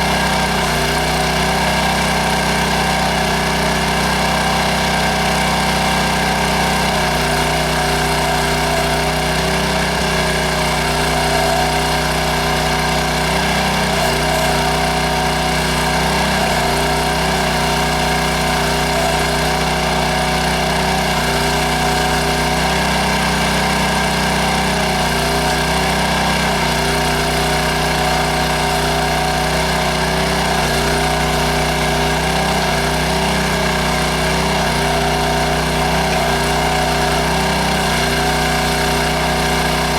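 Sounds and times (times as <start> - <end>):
small gasoline engine running: 0.0 - 39.9.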